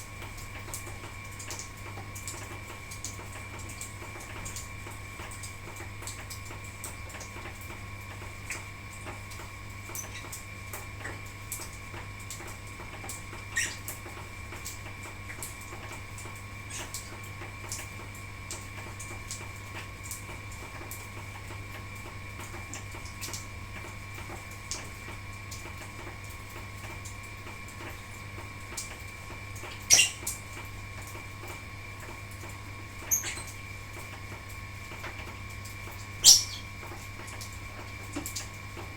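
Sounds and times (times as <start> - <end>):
lovebirds chirping: 29.9 - 30.2, 33.1 - 33.5, 36.2 - 36.7.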